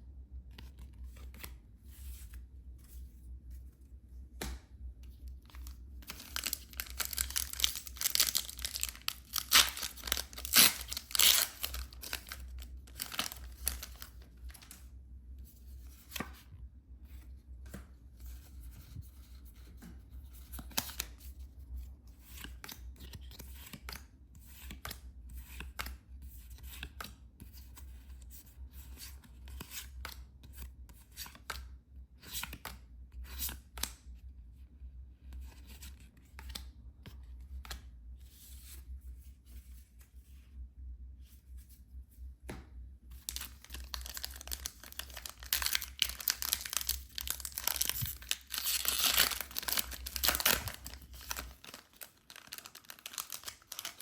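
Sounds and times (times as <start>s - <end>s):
packaging tearing and crinkling: 6.0s - 14.1s, 43.3s - 54.0s.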